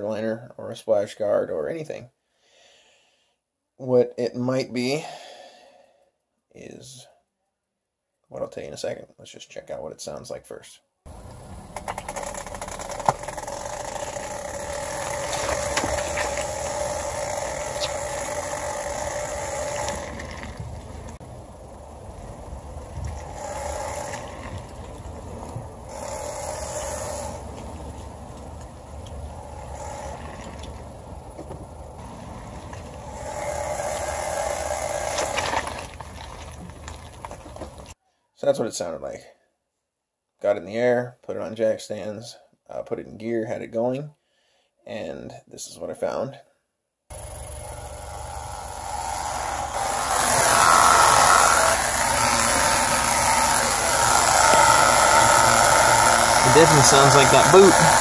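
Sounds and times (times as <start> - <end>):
car rubbing screeching noise: 11.1 - 21.1, 49.4 - 58.0
drivetrain hum: 11.1 - 37.9, 47.1 - 58.0
low road rumble: 11.1 - 38.0, 47.1 - 58.0.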